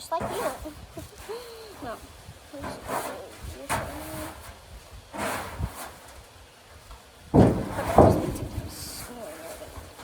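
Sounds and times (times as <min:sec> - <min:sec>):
loud sudden thumps: 0:07.3 - 0:09.0.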